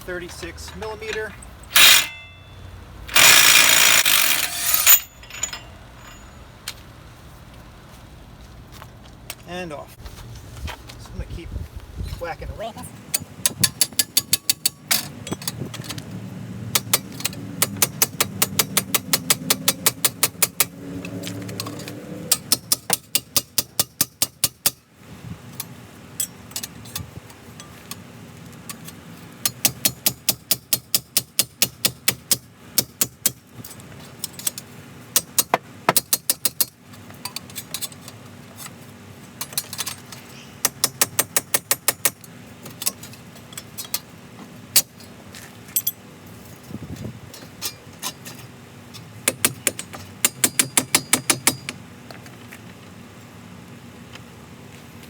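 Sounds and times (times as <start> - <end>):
hammer striking metal hub: 1.1 - 2.5, 3.1 - 6.8, 13.2 - 15.5, 16.8 - 20.7, 22.3 - 24.8, 49.2 - 51.8.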